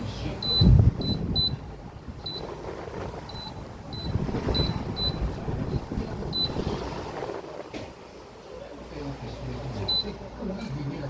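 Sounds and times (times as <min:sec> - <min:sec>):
short electronic beeps: 0:00.4 - 0:01.6, 0:03.3 - 0:05.2, 0:06.3 - 0:06.6.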